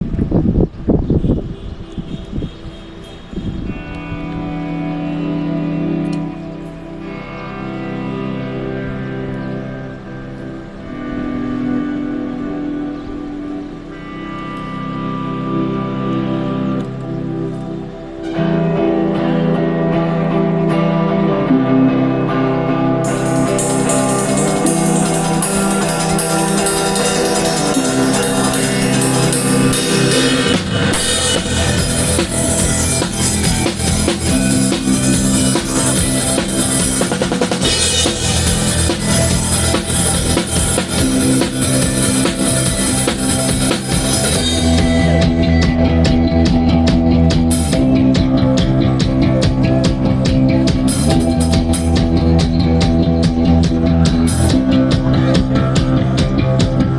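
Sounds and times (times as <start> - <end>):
sustained chords: 1.5 - 56.9
cymbals: 23.0 - 46.8
bass drum: 23.1 - 56.9.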